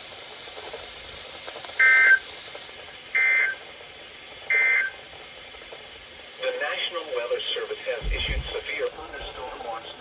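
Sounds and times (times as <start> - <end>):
faint broadcast hiss: 5.4 - 10.0.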